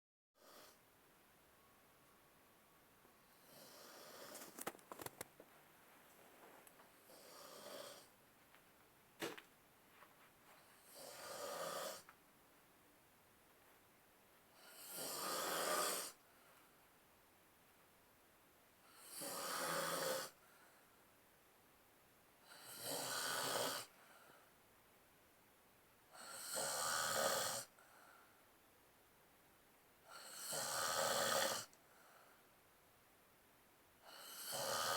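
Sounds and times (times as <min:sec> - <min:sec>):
quiet breathing: 0:03.1 - 0:04.6, 0:05.6 - 0:08.2, 0:14.5 - 0:17.0, 0:18.8 - 0:21.2, 0:22.4 - 0:24.7, 0:26.1 - 0:28.6, 0:30.0 - 0:32.7
person snoring: 0:03.3 - 0:04.5, 0:07.1 - 0:08.1, 0:10.8 - 0:12.1, 0:14.6 - 0:16.2, 0:18.9 - 0:20.4, 0:22.5 - 0:23.9, 0:26.2 - 0:27.7, 0:30.1 - 0:31.7, 0:34.0 - 0:34.9.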